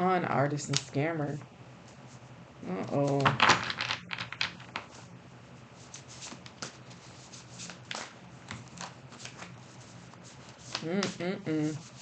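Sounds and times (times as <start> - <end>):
cards being shuffled: 5.8 - 12.0.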